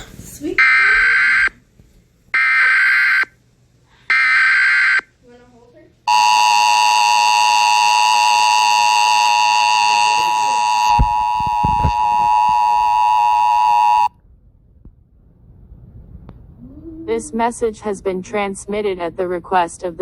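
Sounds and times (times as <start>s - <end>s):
two-tone alert alarm: 6.1s - 14.1s
dull low thumps: 10.9s - 12.7s.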